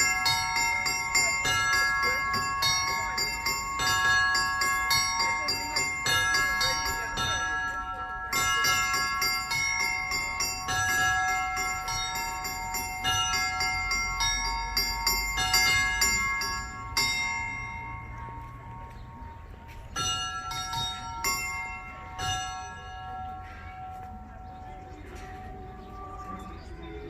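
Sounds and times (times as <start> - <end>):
church bells ringing: 0.0 - 27.0.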